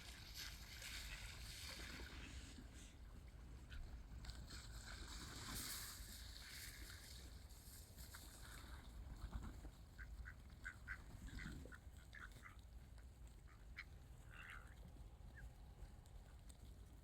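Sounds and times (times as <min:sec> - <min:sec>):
ducks quacking: 0:09.9 - 0:12.6, 0:13.4 - 0:14.8.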